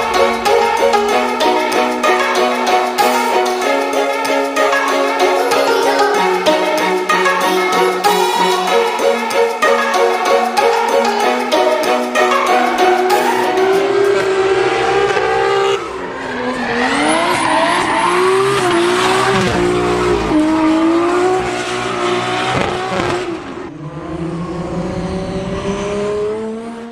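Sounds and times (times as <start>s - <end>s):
car engine revving hard: 13.8s - 26.9s.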